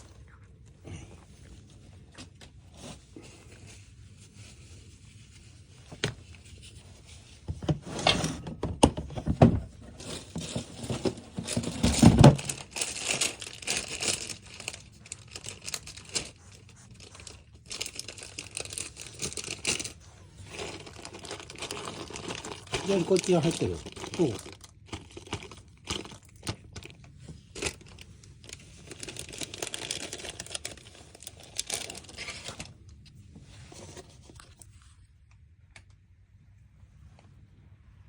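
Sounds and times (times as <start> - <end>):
plastic packaging crinkling: 10.0 - 32.8.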